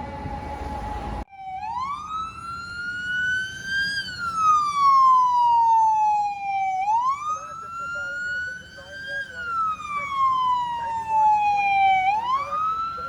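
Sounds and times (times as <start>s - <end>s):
low rumble: 0.0s - 1.2s
siren slow wail: 0.0s - 13.0s.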